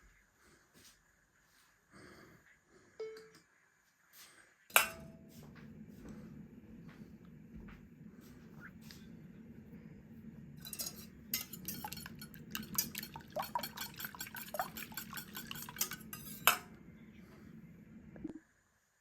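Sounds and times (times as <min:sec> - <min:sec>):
steady low hum: 0:00.1 - 0:19.0
utensils clinking against dishes: 0:10.6 - 0:16.7.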